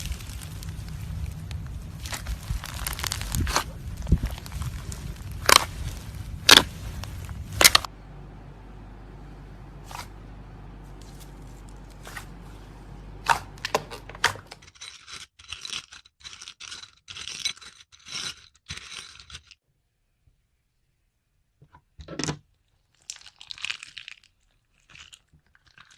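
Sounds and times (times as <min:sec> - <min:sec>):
slime squished by hand: 0:00.0 - 0:07.9
low hum: 0:00.0 - 0:14.6.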